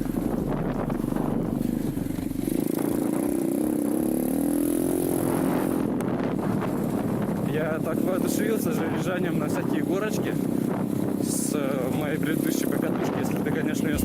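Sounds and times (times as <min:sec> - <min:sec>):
motorbike engine revving: 0:00.0 - 0:07.0.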